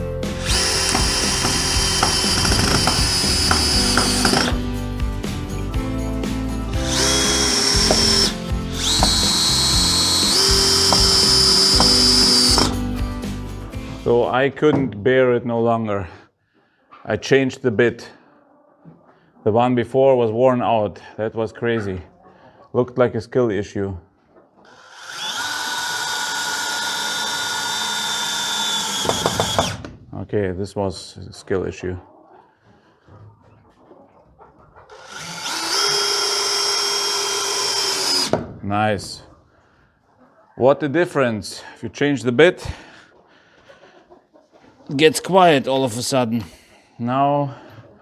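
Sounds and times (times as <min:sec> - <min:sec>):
power drill whining: 0:00.0 - 0:13.4, 0:24.7 - 0:29.9, 0:34.9 - 0:38.4.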